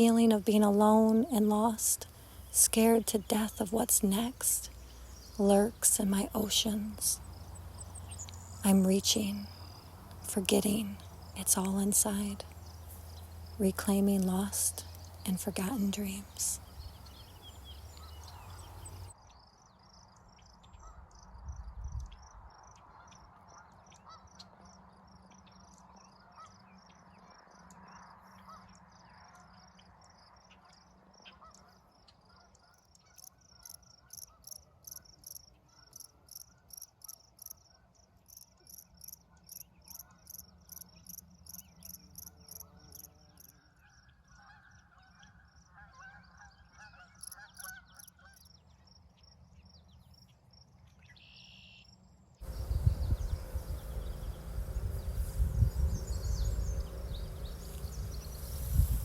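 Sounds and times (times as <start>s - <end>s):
faint low hum: 0.0s - 19.1s, 52.4s - 59.0s.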